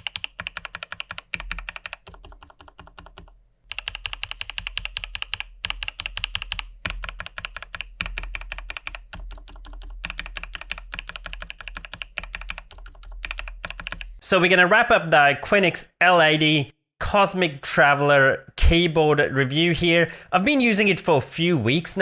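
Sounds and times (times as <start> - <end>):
mechanical keyboard typing: 0.0 - 14.2.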